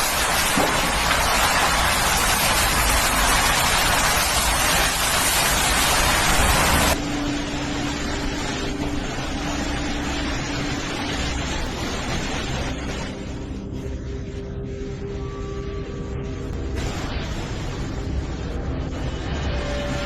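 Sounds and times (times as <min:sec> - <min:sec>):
heavy rain hissing: 0:00.0 - 0:14.3, 0:16.6 - 0:20.0
rushing noise: 0:00.0 - 0:15.6.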